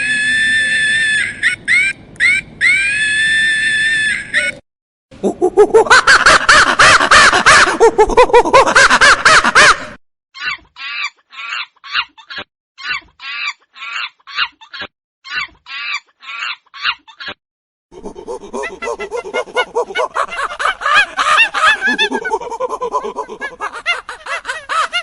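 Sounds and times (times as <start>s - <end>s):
monkey chattering: 18.0s - 20.7s.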